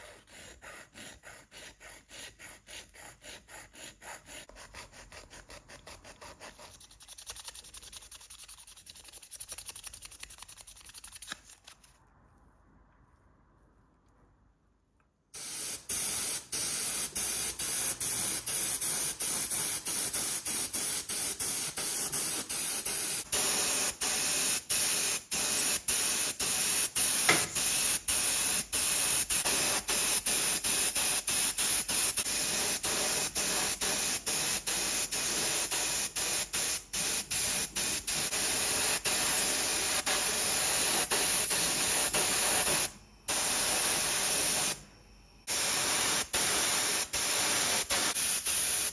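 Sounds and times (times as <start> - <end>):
spraying tool hiss: 15.4 - 44.8, 45.5 - 48.9.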